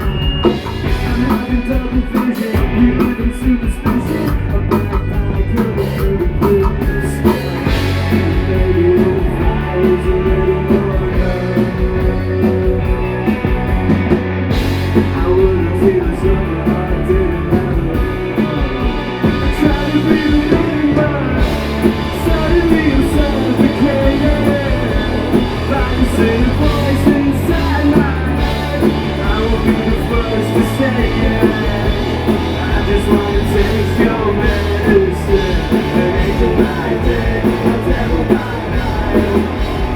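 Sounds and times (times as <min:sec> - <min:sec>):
live rock band: 0:00.0 - 0:39.9
person singing: 0:15.0 - 0:39.9.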